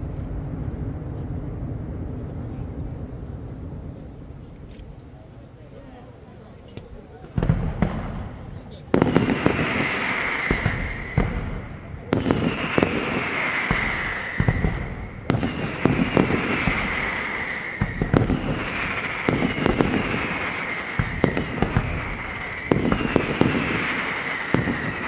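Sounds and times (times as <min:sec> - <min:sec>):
fireworks bangs and crackles: 0:00.0 - 0:25.0
descending firework hiss: 0:06.9 - 0:25.0.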